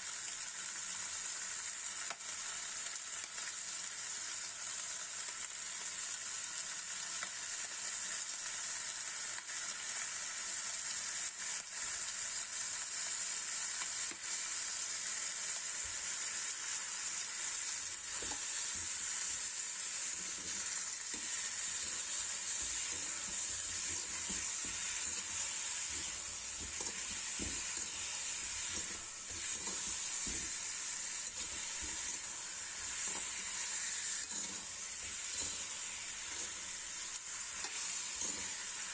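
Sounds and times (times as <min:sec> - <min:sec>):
chicken wings sizzling in pan: 0:00.0 - 0:38.9
spatula knocking in pan: 0:22.6 - 0:30.6.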